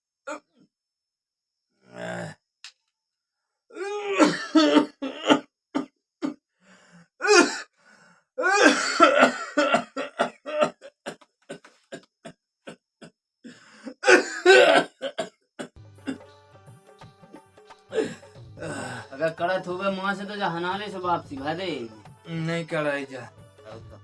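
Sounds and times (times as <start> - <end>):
man clearing throat: 4.1 - 6.4, 8.5 - 13.2, 14.0 - 16.2, 17.9 - 19.1
man coughing hard: 4.1 - 6.4, 8.4 - 13.2, 14.0 - 16.2.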